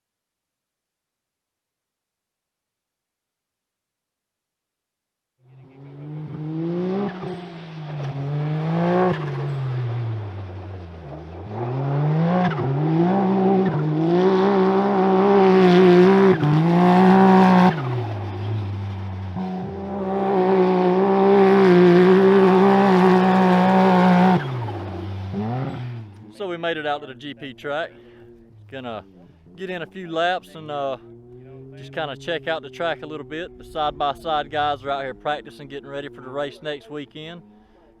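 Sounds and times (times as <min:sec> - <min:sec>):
quad engine revving: 0:05.5 - 0:37.8.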